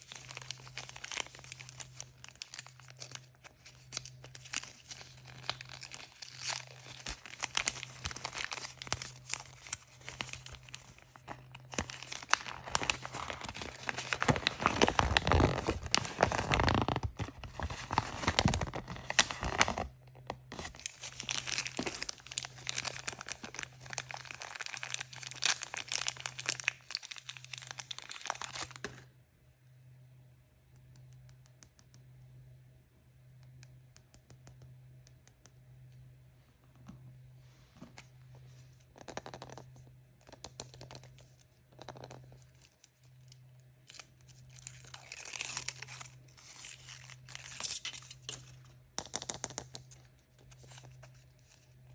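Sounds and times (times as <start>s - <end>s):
packaging crinkling and tearing: 0.0s - 29.1s, 42.1s - 48.7s, 50.4s - 51.9s.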